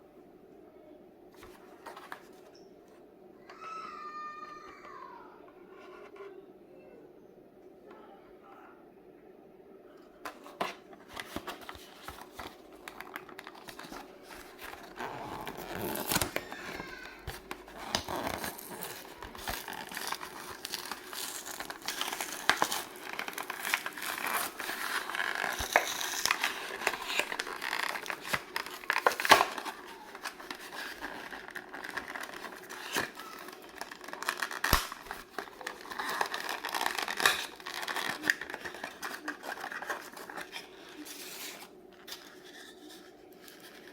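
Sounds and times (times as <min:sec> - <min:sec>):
packaging crinkling and tearing: 0:10.3 - 0:43.9.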